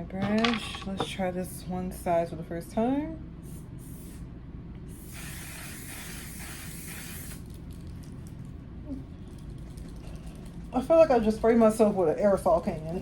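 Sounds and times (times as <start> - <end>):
spray mist hissing: 5.0 - 7.4.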